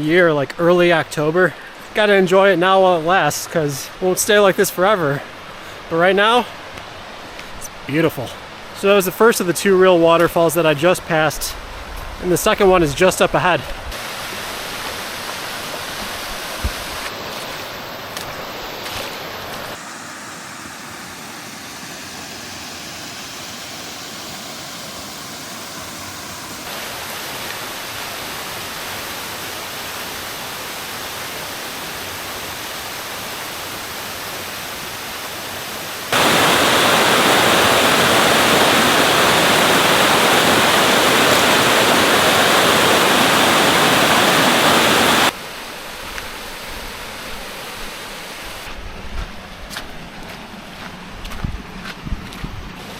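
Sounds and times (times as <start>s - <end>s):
creek water rushing over rocks: 13.0s - 19.9s, 24.5s - 48.7s.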